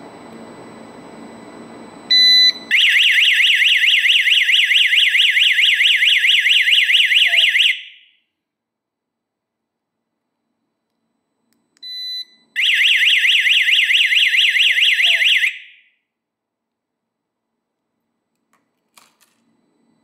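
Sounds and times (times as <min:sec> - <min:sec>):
short alarm beep: 0:02.1 - 0:02.7, 0:11.8 - 0:13.4
warbling alarm siren: 0:02.1 - 0:08.2, 0:12.6 - 0:15.9.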